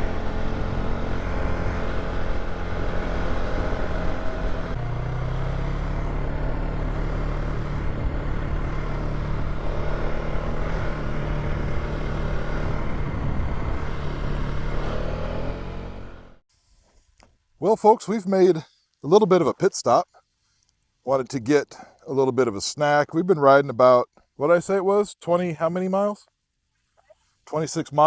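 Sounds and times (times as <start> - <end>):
atv engine running: 0.0 - 16.4.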